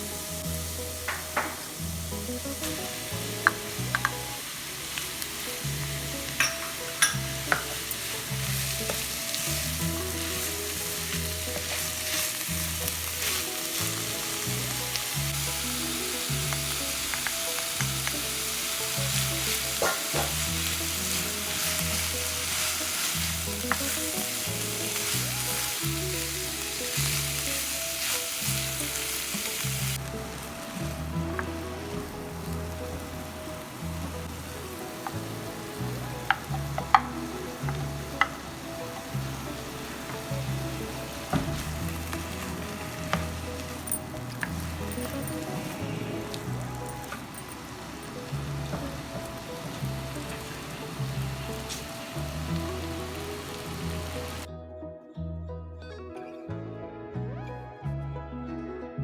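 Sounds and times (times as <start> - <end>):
food sizzling in a pan: 0.0 - 54.5
utensil clicking against pan: 2.6 - 5.4.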